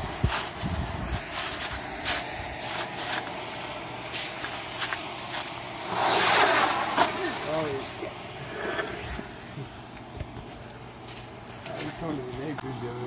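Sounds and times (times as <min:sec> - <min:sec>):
rocket motor hissing whoosh: 0:00.0 - 0:09.8.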